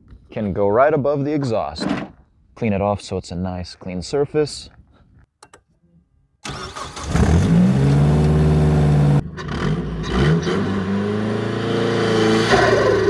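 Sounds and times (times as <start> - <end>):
car engine revving: 6.4 - 13.0.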